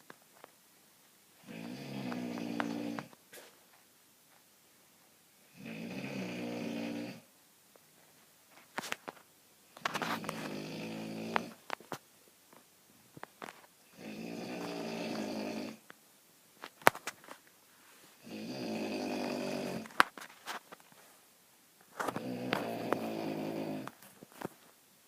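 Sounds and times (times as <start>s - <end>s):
person snoring: 1.4s - 3.1s, 5.5s - 7.3s, 10.0s - 11.6s, 13.9s - 15.8s, 18.2s - 19.9s, 22.1s - 24.0s.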